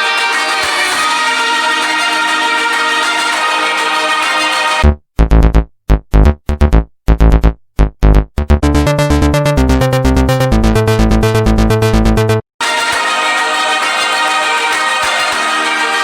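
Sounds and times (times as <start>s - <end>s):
electronic synthesizer music: 0.0s - 4.8s, 8.6s - 16.0s
deep bass hits: 4.8s - 12.4s.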